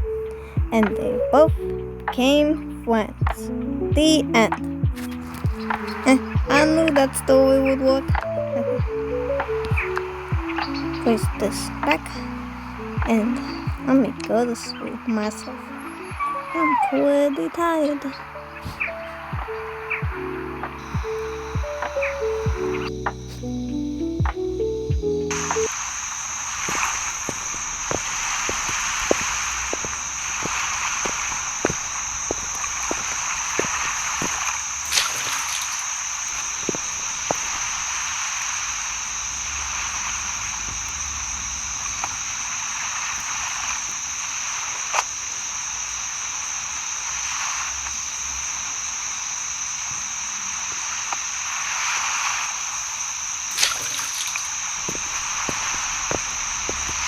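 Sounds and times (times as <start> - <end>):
frogs croaking: 4.4 - 57.0
high-pitched insect trill: 20.8 - 57.0.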